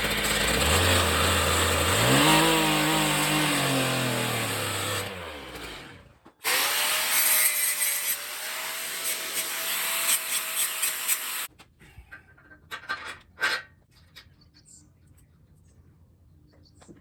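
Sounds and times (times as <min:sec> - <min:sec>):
motor winding down: 0:00.0 - 0:07.2
planer cutting wood: 0:00.0 - 0:11.5.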